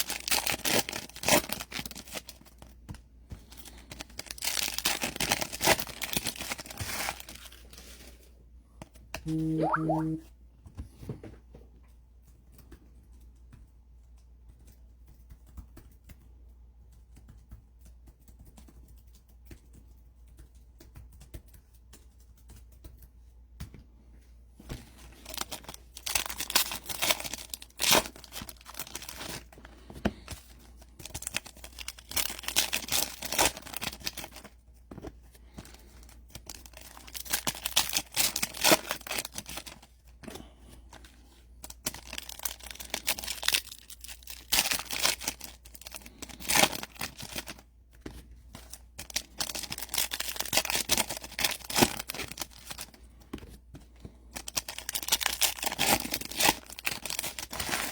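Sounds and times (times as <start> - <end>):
packaging tearing and crinkling: 0.0 - 2.7, 3.9 - 7.6, 25.2 - 29.5, 31.0 - 34.5, 36.4 - 39.9, 41.6 - 47.6, 48.6 - 53.0, 54.4 - 57.9.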